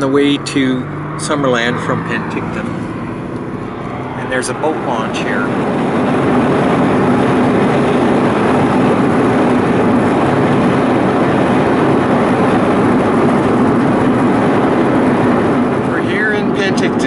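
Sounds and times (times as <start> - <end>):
vehicle road and engine rumble: 0.0 - 17.0.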